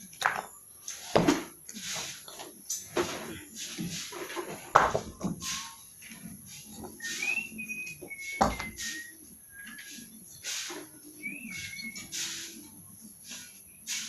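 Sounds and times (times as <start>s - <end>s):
person whistling: 5.4s - 5.9s, 6.9s - 10.4s, 11.1s - 12.5s.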